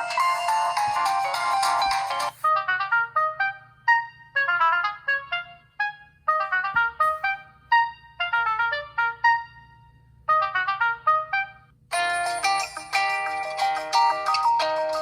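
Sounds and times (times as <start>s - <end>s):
phone ringtone melody: 0.0s - 2.7s, 11.9s - 15.0s.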